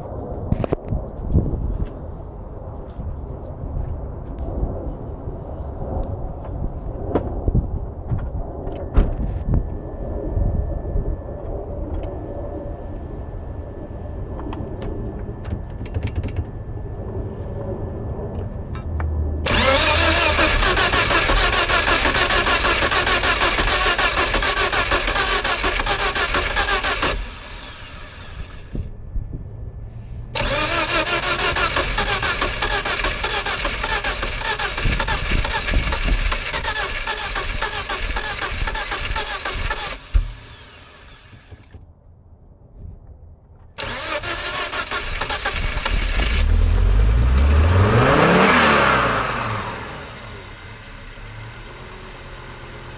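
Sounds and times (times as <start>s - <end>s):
engine sputtering to life: 7.0s - 10.0s, 14.2s - 29.0s, 30.2s - 41.8s, 43.8s - 52.9s
engine cranking by starter: 8.7s - 9.6s, 14.4s - 17.2s, 18.5s - 28.9s, 30.4s - 41.8s, 43.8s - 52.9s.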